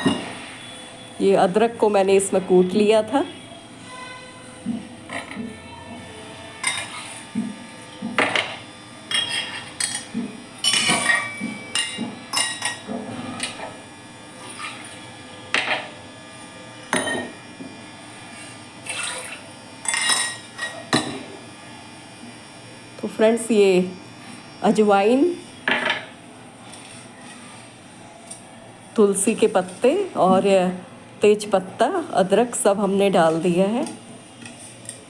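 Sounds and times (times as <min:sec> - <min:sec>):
utensils clinking against a pot: 0:09.1 - 0:13.6, 0:19.8 - 0:21.2.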